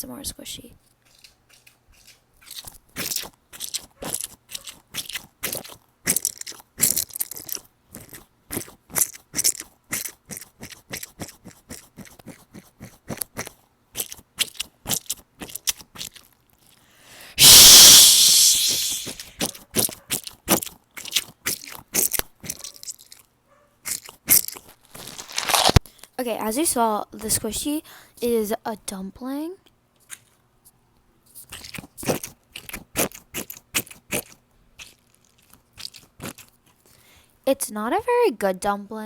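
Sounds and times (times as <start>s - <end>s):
squishy toy being squeezed: 2.0s - 16.3s, 17.4s - 23.2s, 23.8s - 25.8s, 31.4s - 36.6s
rushing hiss: 17.4s - 19.3s.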